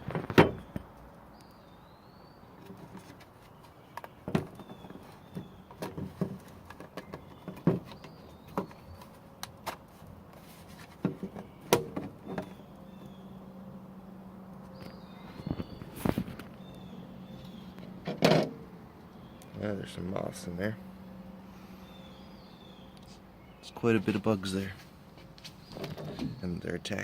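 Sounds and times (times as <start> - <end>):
birds chirping faintly: 0.0 - 27.0
low steady hum: 0.0 - 27.0
handling clicks and knocks: 2.6 - 13.2, 14.5 - 19.6, 25.2 - 26.5.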